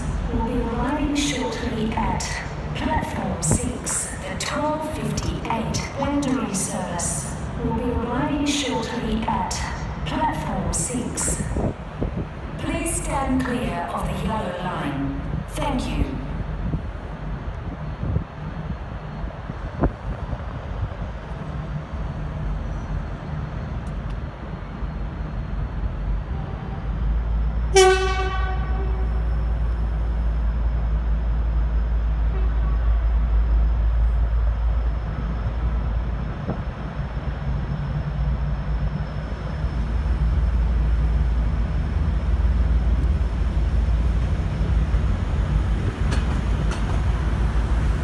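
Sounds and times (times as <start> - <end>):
diesel locomotive engine rumbling: 0.0 - 48.0
locomotive horn toot: 27.7 - 29.2, 32.3 - 33.1.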